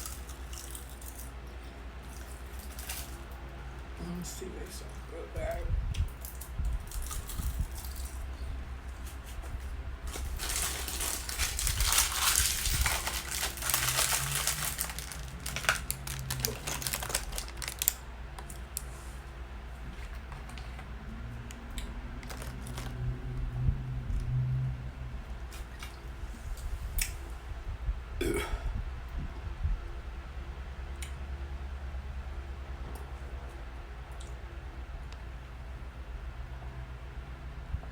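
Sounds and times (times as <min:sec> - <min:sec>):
seaweed snack crunching: 0:00.0 - 0:01.3, 0:06.0 - 0:08.3, 0:10.1 - 0:19.0, 0:21.7 - 0:23.1.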